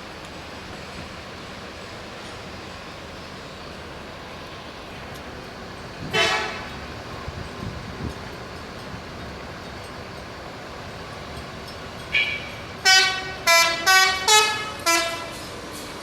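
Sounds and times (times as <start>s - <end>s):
multi-tone bus horn: 6.1s - 6.7s, 12.1s - 15.5s.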